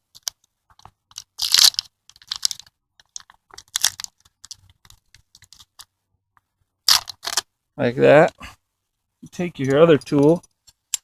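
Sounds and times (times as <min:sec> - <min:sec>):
rubber strips crackling: 0:00.2 - 0:05.8.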